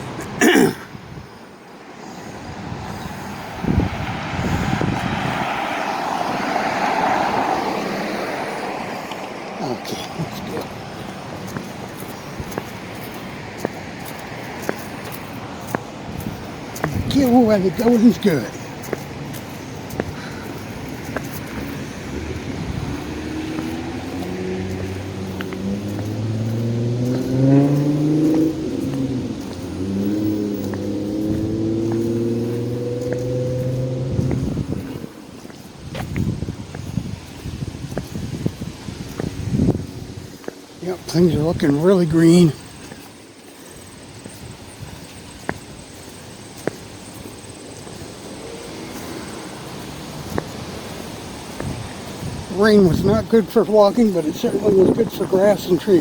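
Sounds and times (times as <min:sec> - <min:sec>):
road traffic passing: 0:00.0 - 0:56.0
vehicle approaching: 0:01.8 - 0:56.0
car engine accelerating past: 0:03.7 - 0:09.7, 0:21.1 - 0:35.2.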